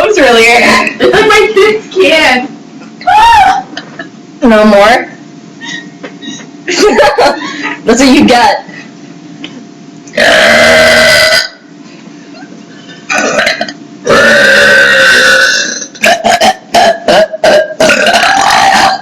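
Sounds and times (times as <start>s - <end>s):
girls burping: 10.2s - 11.6s, 13.1s - 19.0s.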